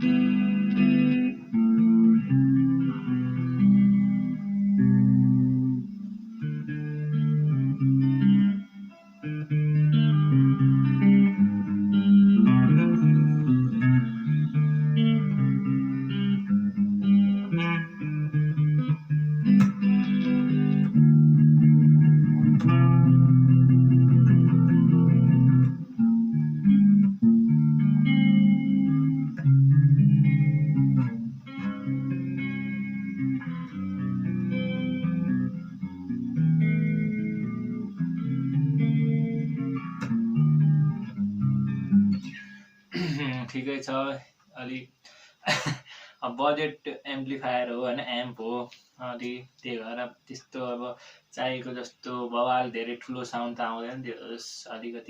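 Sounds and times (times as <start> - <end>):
electric guitar strumming: 0.0 - 55.0.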